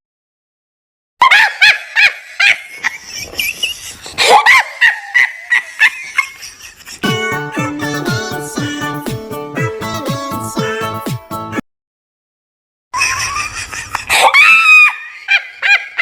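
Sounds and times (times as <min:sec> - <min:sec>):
children's song music: 0:07.0 - 0:11.6.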